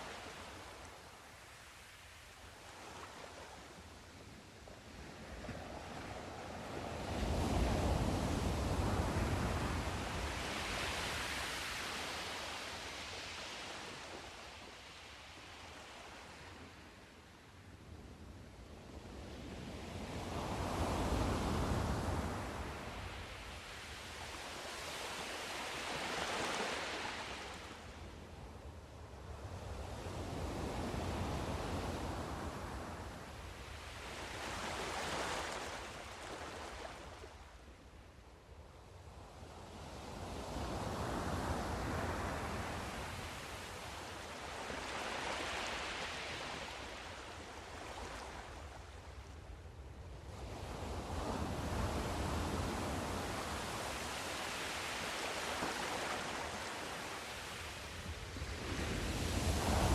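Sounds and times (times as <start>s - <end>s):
waves breaking on shore: 20.4s - 28.0s, 31.2s - 37.5s, 40.6s - 49.4s, 50.4s - 59.9s.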